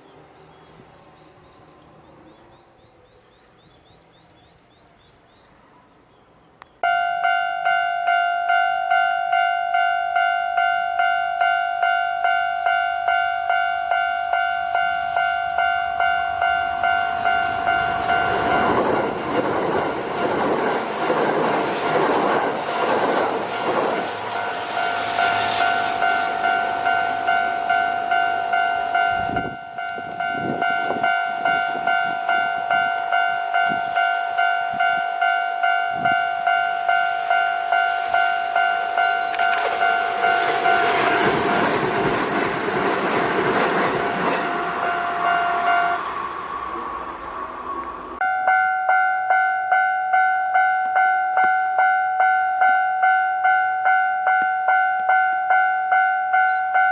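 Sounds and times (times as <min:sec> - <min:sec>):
level-crossing alarm ringing: 0:06.8 - 0:56.9
train wheels rumbling on rails: 0:12.3 - 0:34.0, 0:37.6 - 0:48.2.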